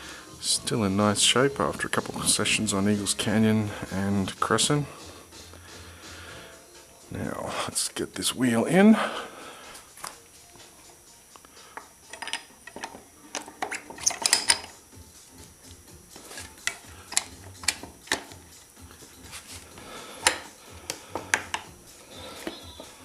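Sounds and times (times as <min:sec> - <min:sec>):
metal clinks and knocks: 0:12.0 - 0:14.8.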